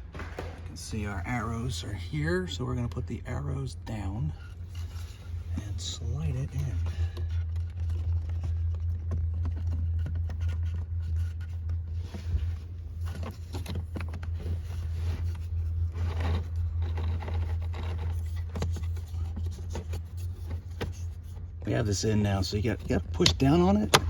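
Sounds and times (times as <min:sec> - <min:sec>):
steady low hum: 0:00.0 - 0:24.0
filter scraping in plastic housing: 0:04.4 - 0:21.4.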